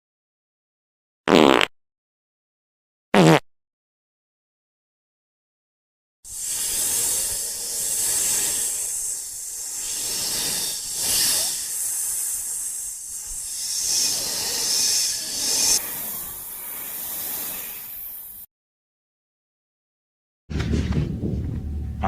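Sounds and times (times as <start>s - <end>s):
snake hissing: 6.3s - 18.4s.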